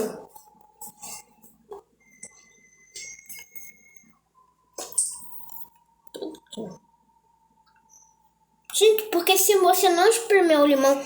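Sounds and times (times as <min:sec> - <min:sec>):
faint steady tones: 0:00.0 - 0:11.0.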